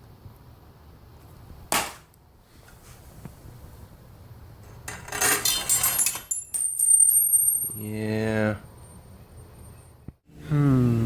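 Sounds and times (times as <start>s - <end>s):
small metal parts clinking: 4.8s - 8.0s.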